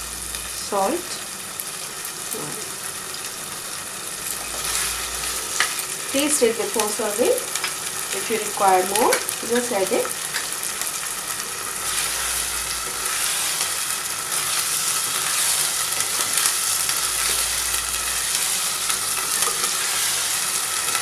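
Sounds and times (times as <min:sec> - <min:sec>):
onions sizzling in hot oil: 0:00.0 - 0:21.0.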